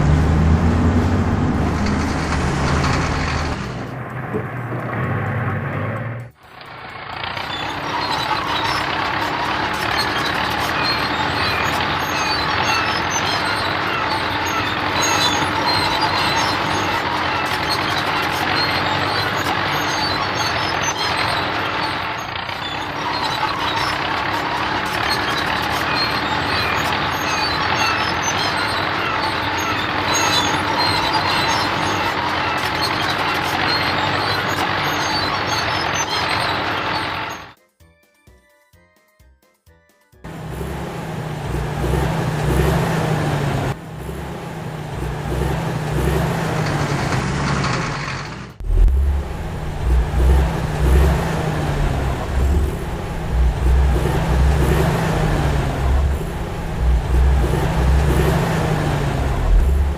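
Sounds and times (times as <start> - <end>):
heavy truck engine running: 0.0 - 37.6, 40.2 - 59.9.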